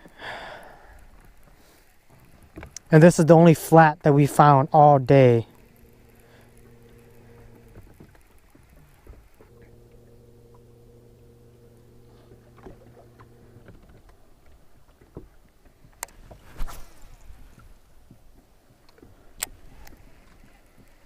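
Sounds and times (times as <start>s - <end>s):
electric trolling motor humming: 0.0s - 16.4s
clicks and knocks on boat: 1.2s - 2.9s, 12.4s - 16.5s, 17.6s - 21.0s.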